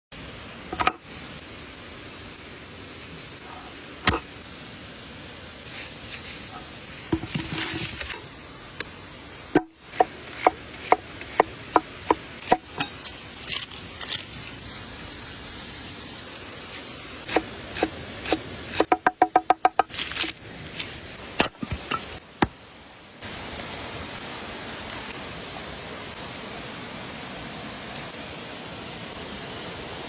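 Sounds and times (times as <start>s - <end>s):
scraping and rubbing: 5.6s - 8.2s
knife chopping on wooden board: 9.6s - 12.9s.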